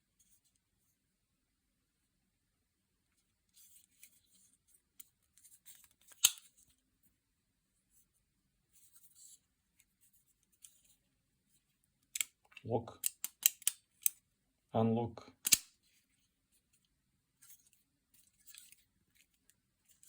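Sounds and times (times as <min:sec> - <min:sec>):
knife handling rubs and clicks: 0:05.8 - 0:06.5
knife blade snapping open: 0:15.4 - 0:15.7.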